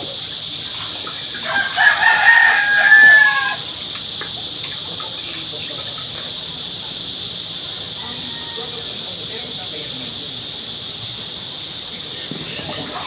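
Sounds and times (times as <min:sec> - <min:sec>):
steady hiss: 0:00.0 - 0:13.0
rooster crowing: 0:01.3 - 0:03.8, 0:07.7 - 0:09.1.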